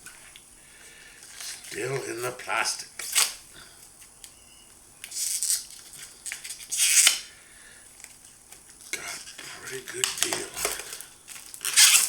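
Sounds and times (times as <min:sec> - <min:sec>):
plastic shrink-wrap crinkling: 0:05.0 - 0:07.3, 0:07.9 - 0:12.0.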